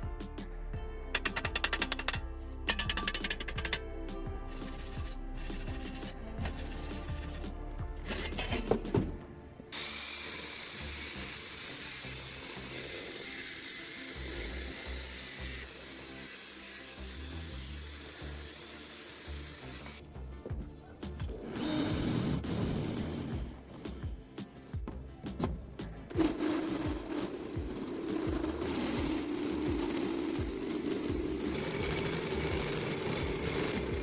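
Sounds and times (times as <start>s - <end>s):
background music: 0.0s - 34.0s
metalworking power tool hissing: 9.8s - 20.0s, 26.1s - 34.0s.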